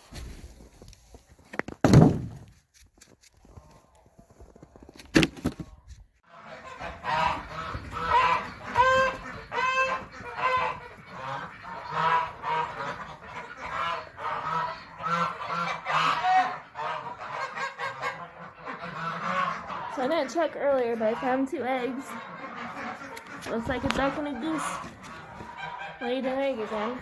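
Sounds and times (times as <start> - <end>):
geese honking: 6.3 - 27.0.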